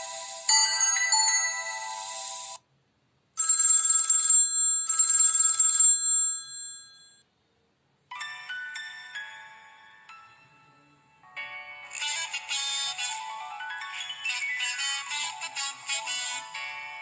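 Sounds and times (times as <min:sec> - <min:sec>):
mobile phone ringtones: 0:00.0 - 0:02.6, 0:03.4 - 0:07.2.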